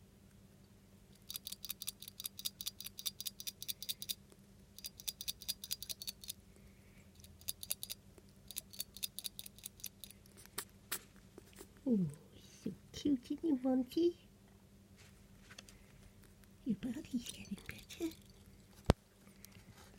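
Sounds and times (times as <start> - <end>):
rat mouth clicking while feeding: 1.1 - 6.4, 7.2 - 11.9.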